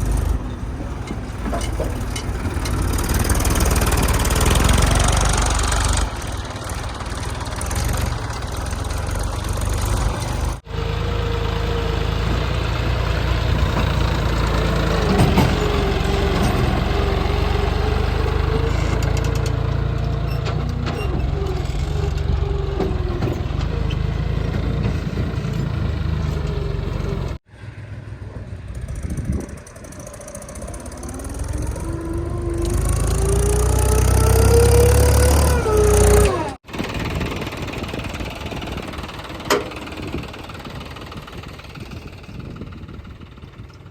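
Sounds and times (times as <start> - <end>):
engine revving: 0.0 - 27.4, 28.7 - 42.4
diesel engine running: 0.0 - 43.9
wavering whine: 29.1 - 36.6.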